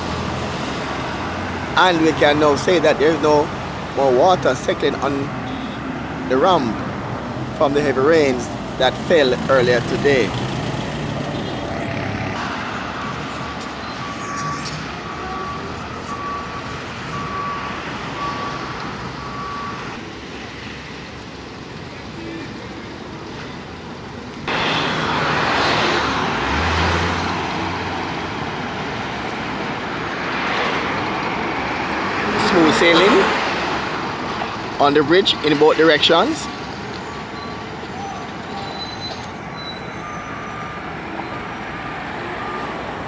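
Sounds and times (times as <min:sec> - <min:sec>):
road traffic passing: 0:00.0 - 0:43.0
reversing beeper: 0:13.0 - 0:19.9, 0:37.0 - 0:42.9.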